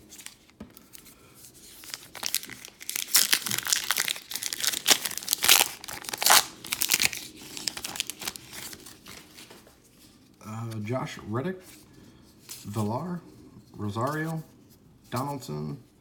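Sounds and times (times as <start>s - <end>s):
foil pack tearing and crinkling: 1.7s - 9.5s.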